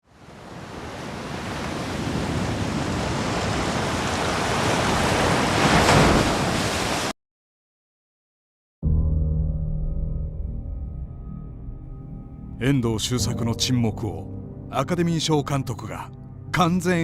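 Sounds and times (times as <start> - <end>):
low sustained musical tone: 8.9 - 17.0.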